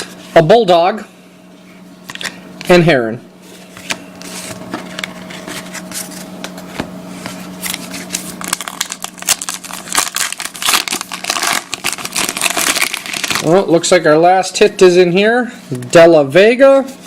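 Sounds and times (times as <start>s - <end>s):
steady low hum: 0.0s - 17.0s
cards being handled: 3.5s - 13.6s
wrapper tearing and crinkling: 7.6s - 13.7s.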